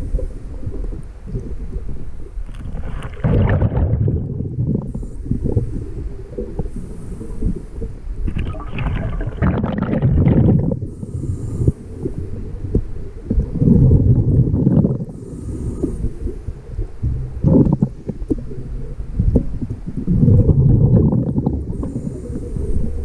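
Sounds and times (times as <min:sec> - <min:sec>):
bubbles rumbling: 0:00.0 - 0:06.8, 0:08.2 - 0:11.0, 0:12.0 - 0:15.4, 0:16.2 - 0:23.0
low underwater rumble: 0:00.0 - 0:23.0
diver breathing through regulator: 0:04.8 - 0:07.9, 0:10.5 - 0:12.6, 0:13.4 - 0:19.5, 0:21.4 - 0:23.0.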